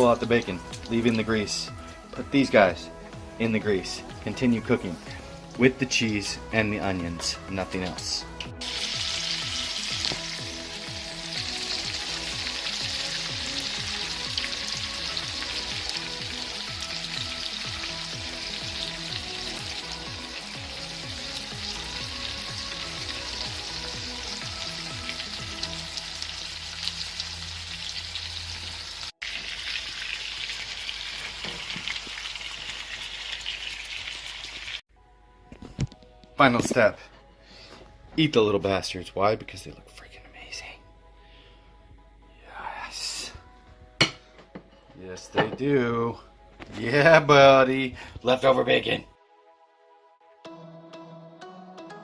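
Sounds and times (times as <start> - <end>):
chicken sizzling in a pan: 8.6 - 34.8.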